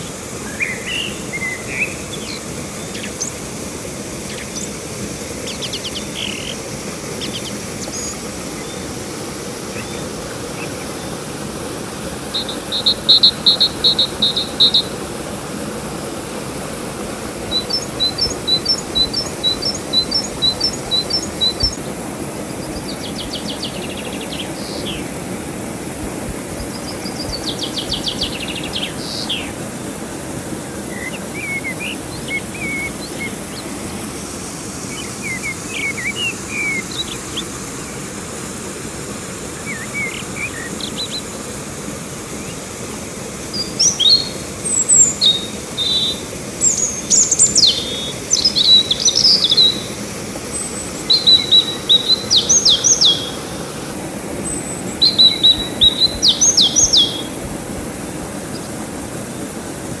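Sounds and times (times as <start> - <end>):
songbirds chirping: 0.0 - 15.0, 17.4 - 37.9, 42.3 - 59.8
river water rushing: 0.0 - 60.0
bird singing loud rapid phrases: 0.4 - 3.4, 5.4 - 8.9, 12.3 - 14.9, 17.5 - 21.9, 22.6 - 25.2, 26.6 - 29.6, 30.9 - 33.9, 34.9 - 37.4, 43.5 - 53.6, 54.4 - 57.4.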